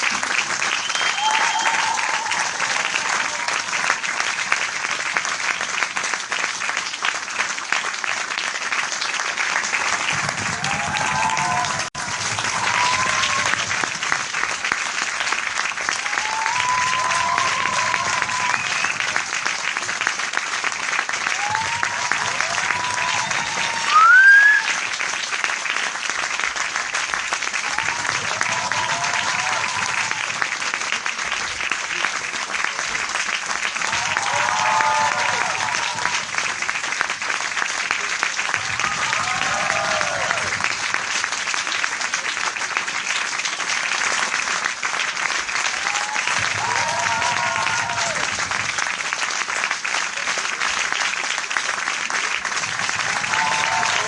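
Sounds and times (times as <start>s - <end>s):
large crowd applauding: 0.0s - 54.0s
voices cheering: 0.8s - 4.0s, 10.3s - 13.9s, 15.8s - 19.4s, 21.2s - 24.8s, 27.6s - 30.6s, 33.8s - 36.5s, 38.5s - 40.8s, 45.6s - 48.5s, 52.8s - 54.0s
short rising whistle: 23.9s - 24.7s.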